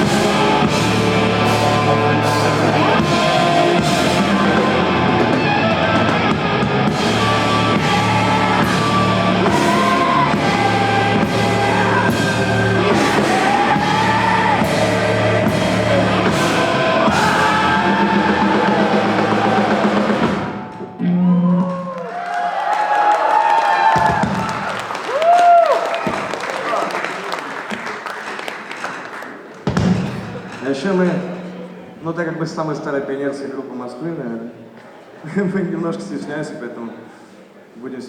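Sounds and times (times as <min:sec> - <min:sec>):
live rock band playing: 0:00.0 - 0:21.3
pulsing bass line: 0:00.0 - 0:21.7.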